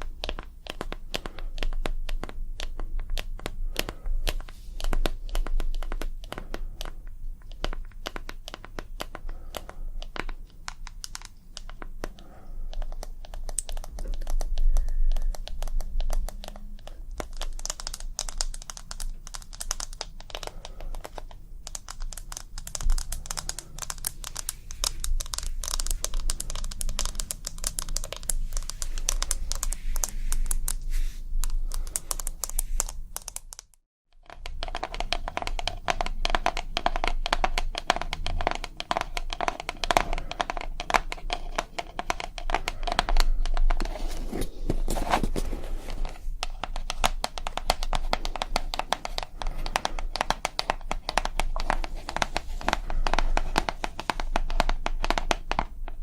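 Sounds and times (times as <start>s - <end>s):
fingertip and nail tapping: 0.0s - 30.8s, 31.4s - 43.9s, 46.0s - 55.7s.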